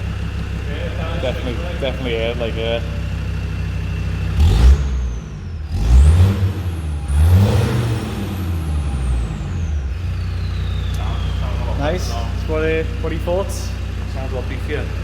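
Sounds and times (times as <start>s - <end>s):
diesel engine idling and revving: 0.0s - 15.0s
high turbo whistle: 10.0s - 12.1s.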